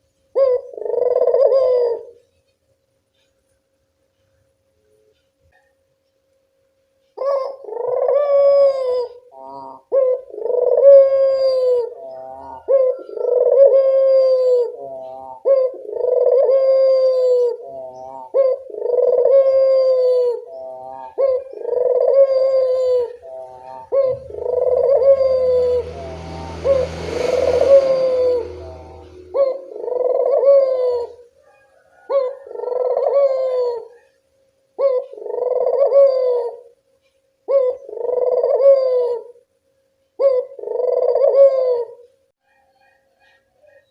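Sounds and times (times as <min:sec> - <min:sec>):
dove cooing: 0:00.3 - 0:02.3, 0:07.2 - 0:34.2, 0:34.8 - 0:36.8, 0:37.5 - 0:39.4, 0:40.2 - 0:43.9
hiss with low hum: 0:24.2 - 0:29.8.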